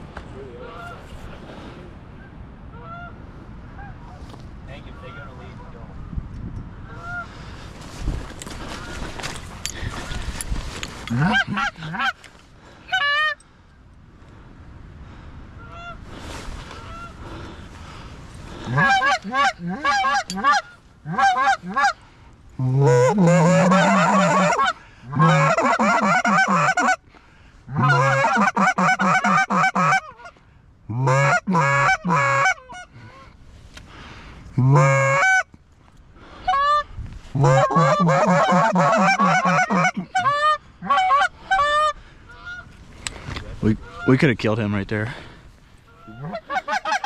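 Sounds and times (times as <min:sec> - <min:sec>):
geese honking: 0:06.9 - 0:07.4, 0:11.1 - 0:12.3, 0:12.9 - 0:13.4, 0:16.6 - 0:17.6, 0:18.5 - 0:22.0, 0:22.6 - 0:27.0, 0:27.7 - 0:30.4, 0:31.0 - 0:33.4, 0:34.6 - 0:35.5, 0:36.4 - 0:44.2, 0:45.8 - 0:47.0.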